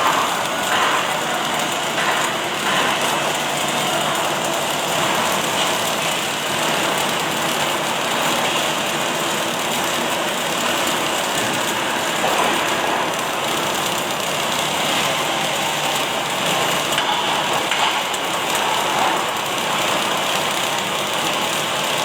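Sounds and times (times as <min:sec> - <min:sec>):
welding arc crackle and hiss: 0:00.0 - 0:22.0.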